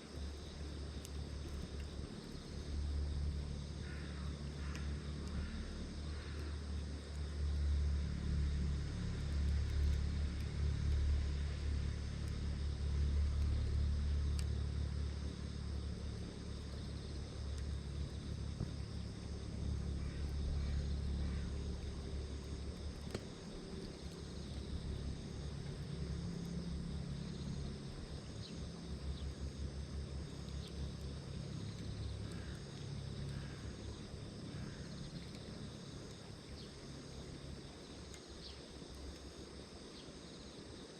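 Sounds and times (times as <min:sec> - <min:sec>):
steady low rumble: 0:00.0 - 0:39.6
insect chirring: 0:00.0 - 0:40.9.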